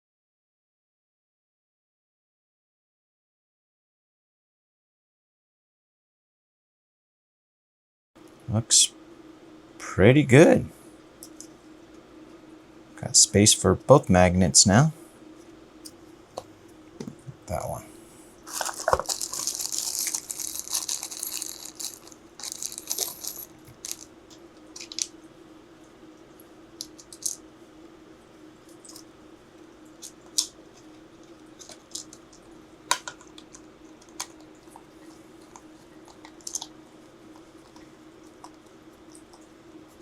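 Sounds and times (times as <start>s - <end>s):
steady low hum: 8.2s - 40.0s.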